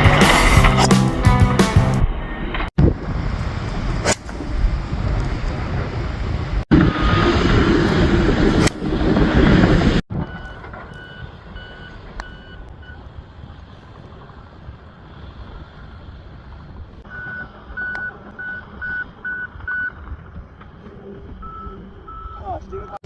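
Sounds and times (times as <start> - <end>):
vehicle reversing beeper: 10.1 - 13.0, 17.1 - 20.0, 21.0 - 22.6.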